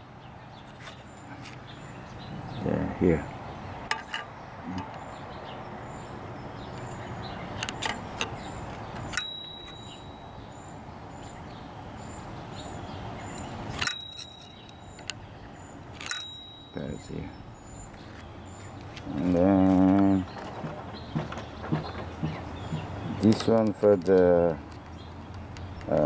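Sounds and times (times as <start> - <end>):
typewriter bell ding: 9.1 - 10.3, 13.8 - 14.7, 16.1 - 16.9.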